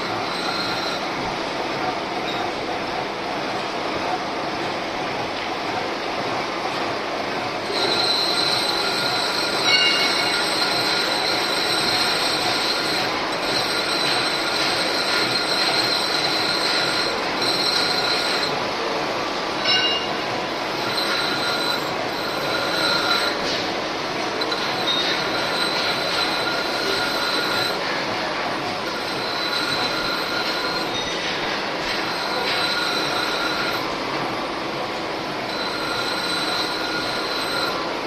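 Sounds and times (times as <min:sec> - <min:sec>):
short screeches: 0:00.0 - 0:01.1, 0:07.7 - 0:18.6, 0:20.8 - 0:23.6, 0:24.4 - 0:27.9, 0:28.9 - 0:31.3, 0:31.9 - 0:33.8, 0:35.5 - 0:37.8
lathe cutting squeal: 0:00.0 - 0:01.4, 0:07.6 - 0:18.8, 0:19.5 - 0:34.2, 0:35.3 - 0:38.0.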